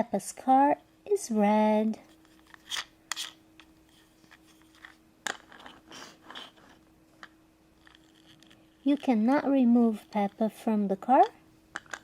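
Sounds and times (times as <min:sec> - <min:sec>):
faint steady hum: 0:00.0 - 0:12.0
plastic toy car clicks and scrapes: 0:02.3 - 0:03.4, 0:04.3 - 0:10.5.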